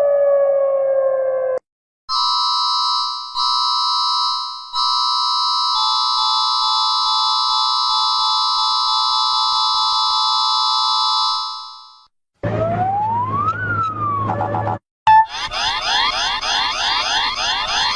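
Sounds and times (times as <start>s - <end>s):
chord of electronic alert tones: 2.1s - 12.1s.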